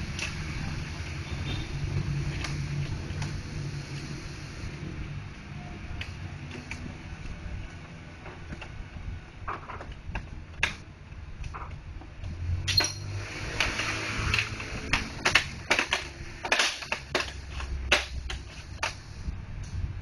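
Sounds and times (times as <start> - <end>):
plastic parts clicking together: 13.6 - 19.0.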